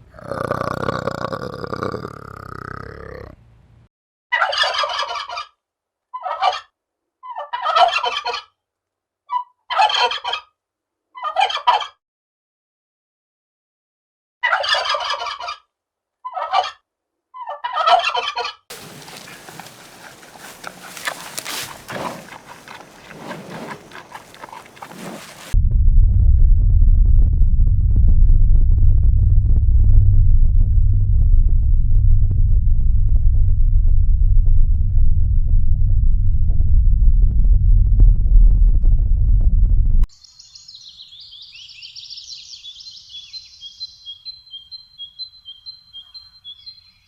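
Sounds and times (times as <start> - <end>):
turkey gobbling: 7.4 - 8.4, 17.6 - 25.6
low steady background noise: 18.7 - 25.6.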